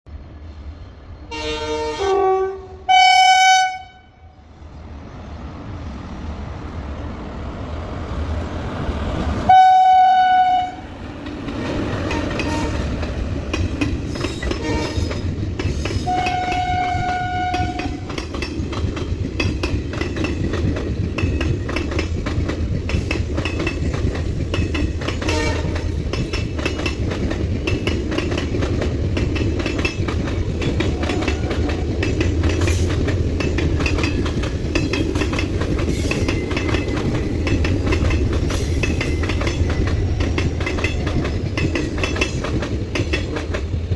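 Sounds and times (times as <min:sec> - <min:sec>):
train rumble: 0:00.1 - 0:43.9
train horn blasts: 0:01.3 - 0:04.4, 0:09.5 - 0:10.9, 0:11.6 - 0:12.9, 0:14.5 - 0:15.2, 0:16.0 - 0:18.1, 0:25.2 - 0:25.8, 0:30.9 - 0:31.8
wheels clattering over rail joints: 0:11.1 - 0:43.9.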